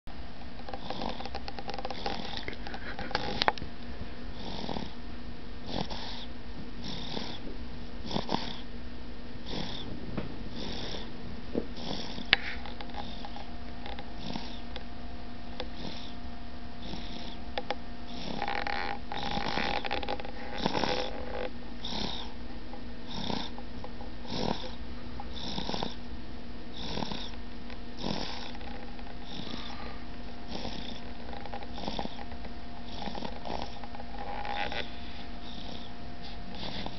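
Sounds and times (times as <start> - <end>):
steady low hum: 0.1 - 36.9
rhythmic snoring: 0.6 - 3.6, 4.3 - 5.0, 5.6 - 8.7, 9.4 - 9.9, 10.5 - 11.1, 11.7 - 14.8, 15.5 - 16.2, 16.8 - 22.4, 23.0 - 23.6, 24.2 - 26.0, 26.7 - 27.4, 28.0 - 36.9.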